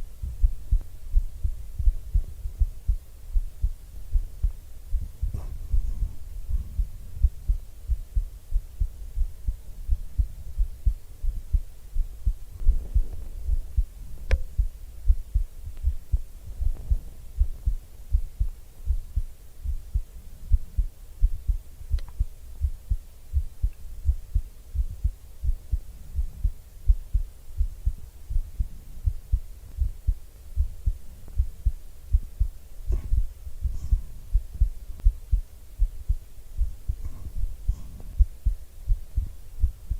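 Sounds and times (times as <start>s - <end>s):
heartbeat double thumps: 0.0s - 39.9s
faint clicks: 22.0s - 22.2s.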